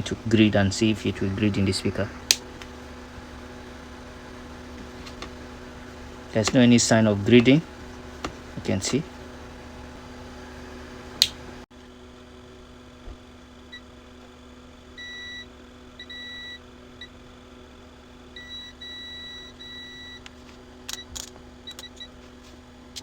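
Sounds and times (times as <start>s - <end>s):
continuity tester beeping: 0.0s - 11.6s, 15.0s - 17.2s, 18.3s - 20.3s, 20.9s - 22.2s.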